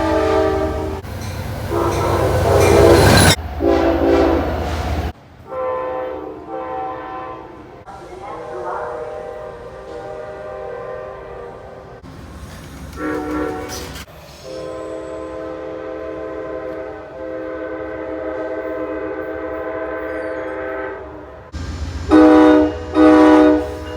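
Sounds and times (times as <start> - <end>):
loud horn blast: 0.0 - 1.0, 1.7 - 4.8, 5.5 - 7.7, 8.9 - 11.8, 13.0 - 13.8, 14.5 - 21.1, 22.1 - 23.9
train air horn chord: 0.0 - 1.0, 1.7 - 4.6, 5.5 - 7.7, 8.4 - 12.0, 13.0 - 13.8, 14.4 - 21.2, 22.0 - 23.9.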